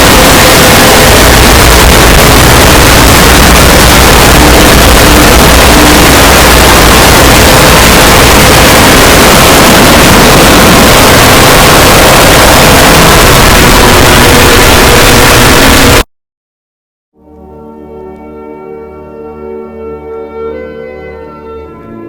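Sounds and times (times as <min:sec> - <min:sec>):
loud distorted noise: 0:00.0 - 0:16.1.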